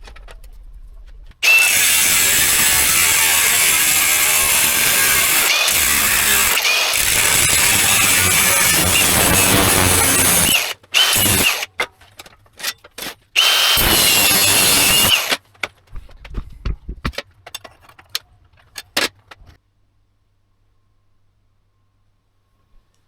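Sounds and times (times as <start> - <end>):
power tool whining: 1.4 - 11.7, 13.4 - 15.4.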